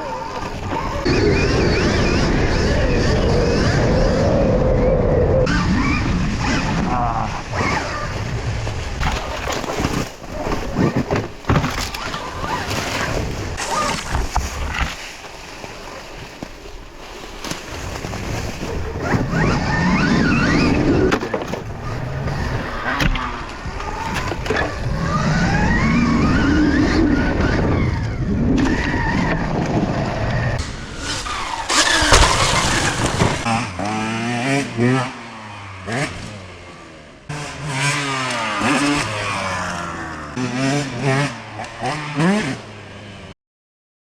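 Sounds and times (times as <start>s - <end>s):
off-road vehicle engine revving: 19.0s - 43.1s.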